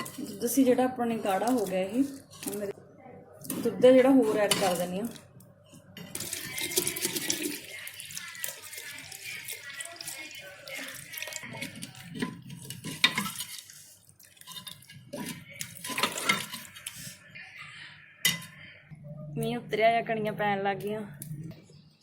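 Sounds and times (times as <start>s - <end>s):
liquid stirring: 0.0s - 2.7s, 3.4s - 17.2s
milk pouring and splashing: 6.0s - 17.0s.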